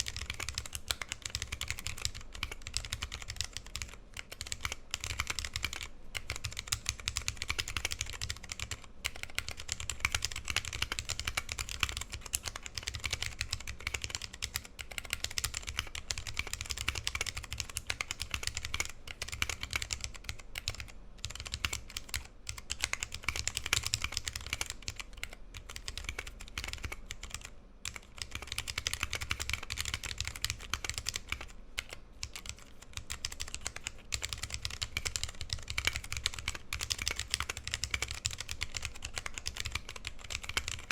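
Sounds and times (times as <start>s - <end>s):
mechanical keyboard typing: 0.0s - 40.9s.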